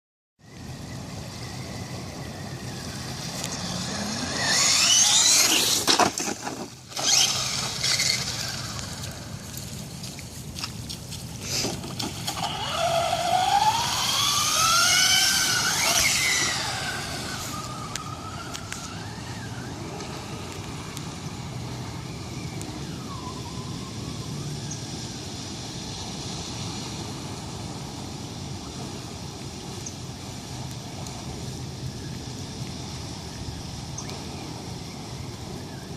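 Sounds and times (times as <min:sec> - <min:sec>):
rc truck motor whining: 0:00.8 - 0:09.2, 0:11.6 - 0:24.0.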